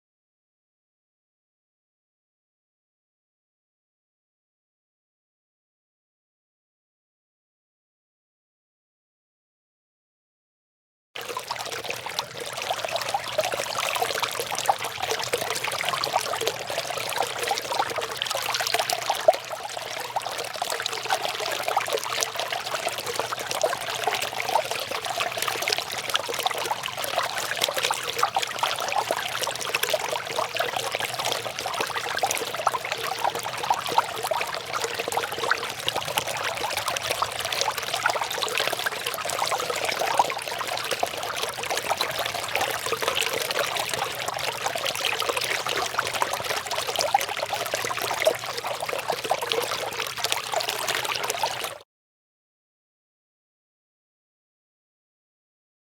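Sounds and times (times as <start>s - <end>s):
small waterfall splashing: 11.2s - 51.8s.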